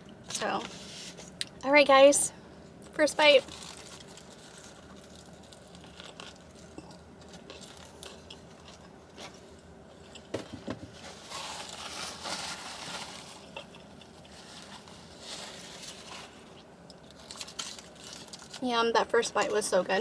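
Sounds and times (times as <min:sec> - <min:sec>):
chewing food: 0:02.8 - 0:10.3, 0:13.0 - 0:18.6.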